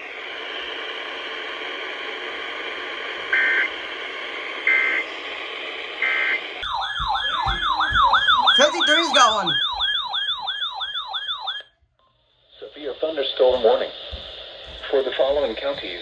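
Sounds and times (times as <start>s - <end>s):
wailing siren: 6.2s - 11.7s.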